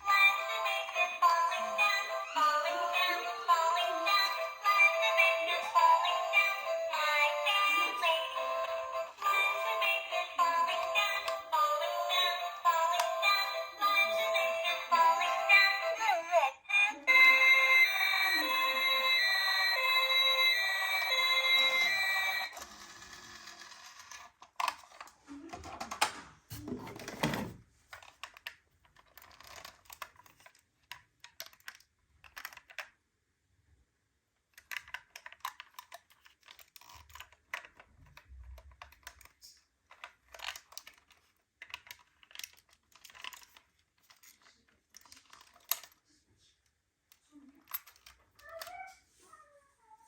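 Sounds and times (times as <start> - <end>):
plastic toy cars clattering: 22.5 - 33.0, 34.5 - 46.1, 47.1 - 48.8.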